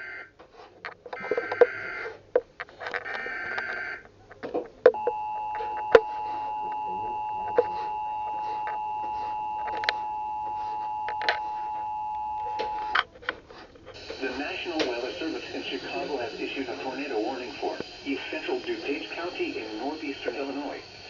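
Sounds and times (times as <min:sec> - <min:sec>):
screechy data burst: 0:01.2 - 0:02.1, 0:03.0 - 0:04.0, 0:14.0 - 0:21.0
two-tone attention signal: 0:04.9 - 0:13.0.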